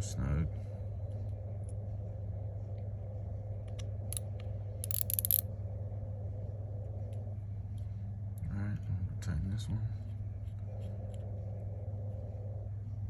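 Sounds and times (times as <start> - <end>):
steady low hum: 0.0 - 13.0
screwdriver clicking on metal screws: 4.8 - 5.4.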